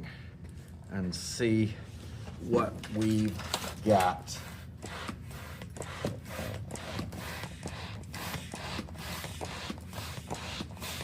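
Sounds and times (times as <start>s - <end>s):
balloon rubbing and scraping: 4.2s - 11.0s.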